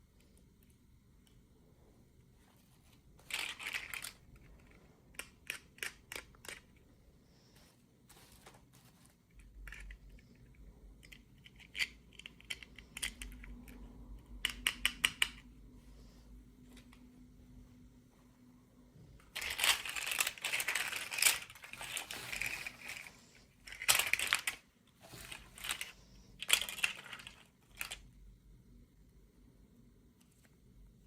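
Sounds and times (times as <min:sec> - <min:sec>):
plastic clicks and snaps: 0:11.0 - 0:15.5
packaging crinkling: 0:19.4 - 0:27.9.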